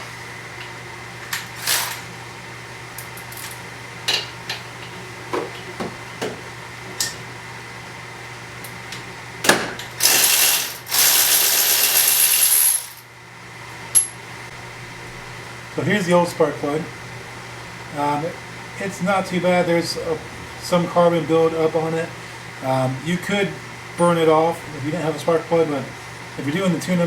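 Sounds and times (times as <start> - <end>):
socket ratchet clicking: 10.0 - 13.0.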